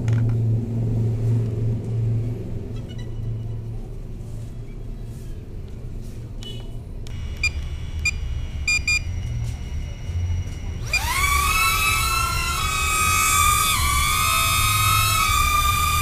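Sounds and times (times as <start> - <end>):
low rumble: 0.0 - 4.4
drone motors spinning up: 7.1 - 16.0
short electronic beeps: 7.3 - 9.5.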